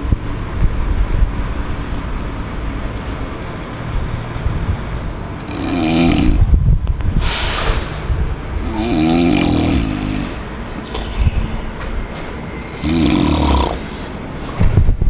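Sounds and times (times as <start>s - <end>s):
steady low rumble: 0.0s - 15.0s
person snoring: 5.5s - 6.5s, 8.6s - 10.4s, 12.8s - 14.0s.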